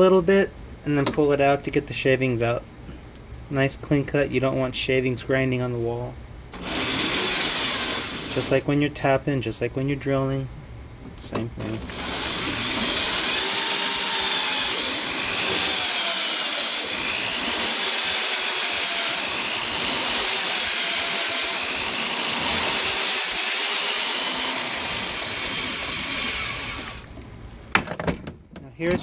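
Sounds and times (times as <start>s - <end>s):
power drill boring aluminum: 6.6s - 8.6s, 11.9s - 27.2s.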